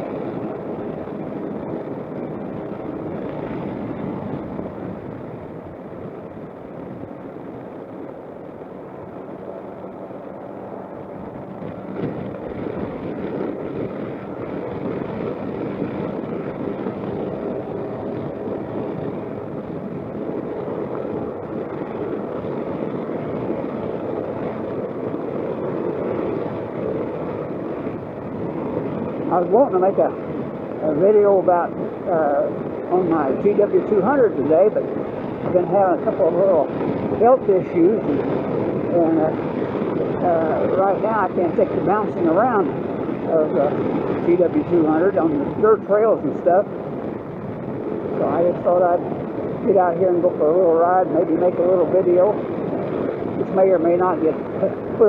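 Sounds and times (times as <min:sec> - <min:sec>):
scooter engine running: 0:00.0 - 0:55.0
wind and road noise: 0:00.0 - 0:55.0.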